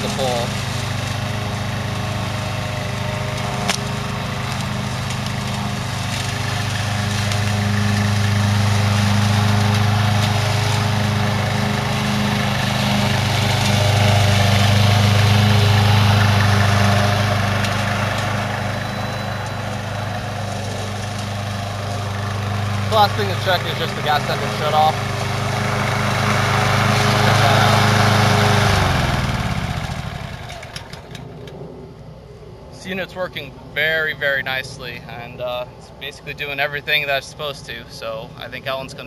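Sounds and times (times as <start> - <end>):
mower engine droning: 0.0 - 31.8.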